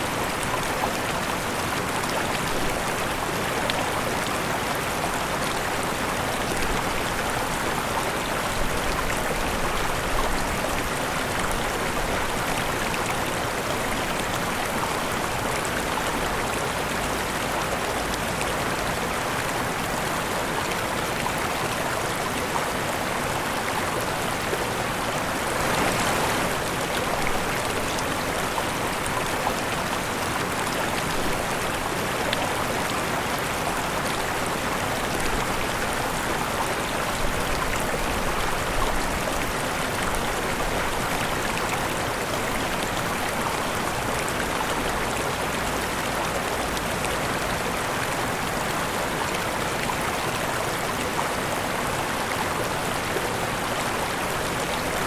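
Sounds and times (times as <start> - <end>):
waterfall rushing: 20.4 - 55.0.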